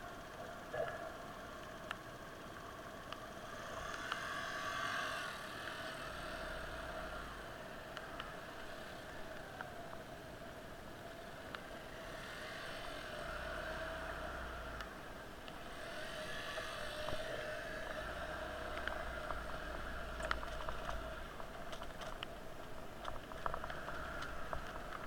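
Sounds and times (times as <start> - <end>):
vehicle road noise in rain: 0.0 - 25.0
wavering hum: 0.0 - 25.0
low rumbles: 17.0 - 25.0.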